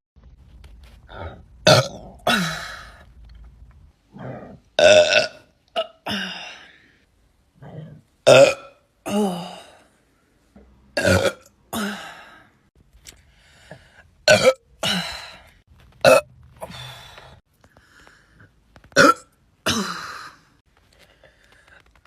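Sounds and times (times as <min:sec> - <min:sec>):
woman burping: 0:01.6 - 0:02.9, 0:04.8 - 0:06.6, 0:08.3 - 0:09.8, 0:11.0 - 0:12.1, 0:14.3 - 0:15.3, 0:19.0 - 0:20.4.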